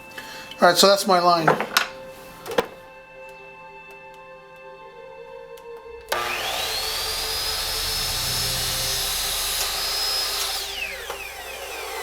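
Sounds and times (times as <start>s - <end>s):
miter saw motor whine: 6.1s - 12.0s.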